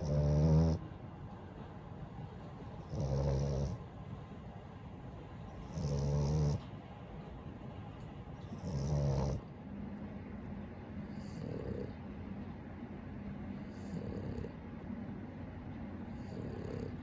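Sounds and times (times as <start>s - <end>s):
dog snoring: 0.0s - 0.9s, 2.8s - 3.8s, 5.5s - 6.7s, 8.4s - 9.5s, 11.0s - 12.0s, 13.6s - 14.6s, 16.1s - 17.0s.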